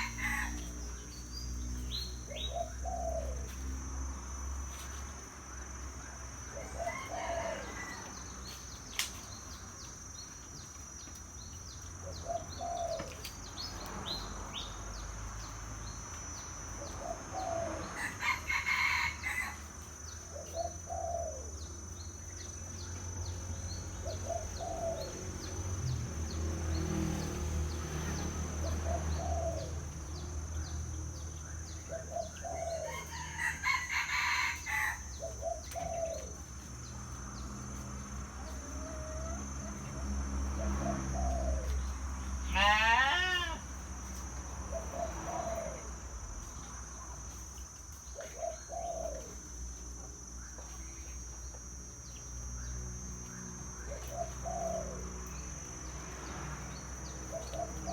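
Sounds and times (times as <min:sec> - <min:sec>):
dove cooing: 0:02.3 - 0:03.5, 0:12.0 - 0:13.3, 0:16.8 - 0:19.0, 0:20.3 - 0:21.7, 0:24.0 - 0:25.3, 0:28.2 - 0:30.2, 0:31.8 - 0:36.5, 0:40.6 - 0:41.8, 0:44.7 - 0:46.0, 0:48.2 - 0:49.5, 0:53.8 - 0:55.4, 0:57.2 - 0:57.9.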